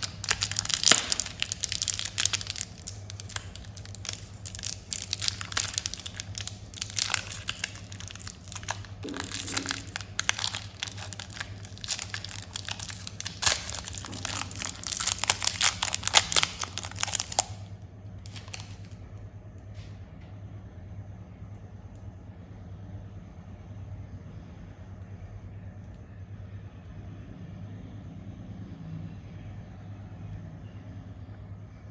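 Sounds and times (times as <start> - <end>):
plastic wrappers crinkling and tearing: 0.0 - 19.0.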